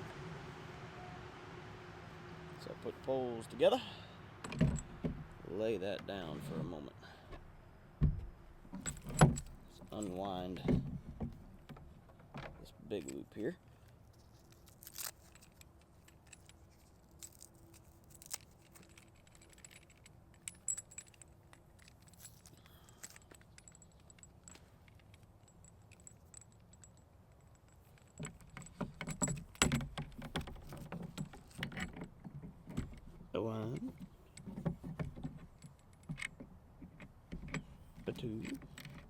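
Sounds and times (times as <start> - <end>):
metallic clicks and jingles: 8.7 - 10.8, 12.5 - 39.0
rattling and knocking: 28.1 - 33.2.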